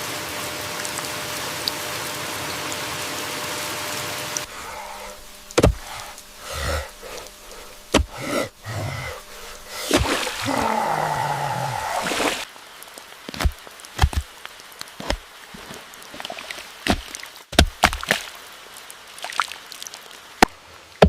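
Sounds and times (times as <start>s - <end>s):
steady rain: 0.0s - 21.0s
sharp knocks: 5.6s - 5.8s.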